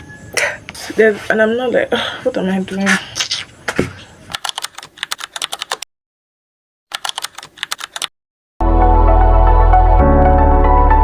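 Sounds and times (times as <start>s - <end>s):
music: 8.6s - 11.0s.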